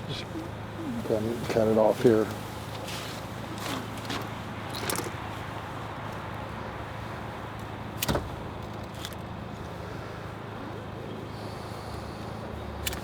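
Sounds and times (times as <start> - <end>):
steady low hum: 0.0 - 13.0
light clicks and rustles: 1.4 - 5.4, 7.6 - 9.8.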